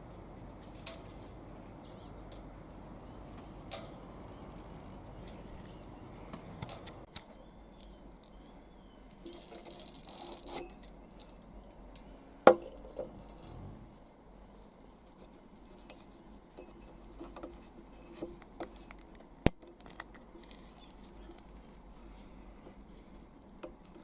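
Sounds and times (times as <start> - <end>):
small handling clicks and knocks: 15.2 - 21.6.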